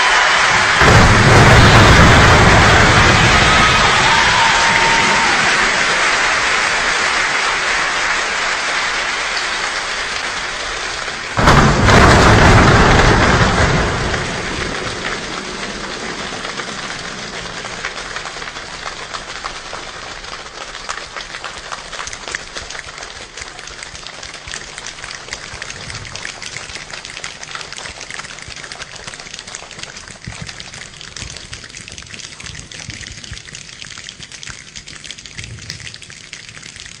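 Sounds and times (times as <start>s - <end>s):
imitated rain patter: 0.0s - 37.0s
thunder-like rumble: 0.5s - 6.3s, 11.4s - 19.0s.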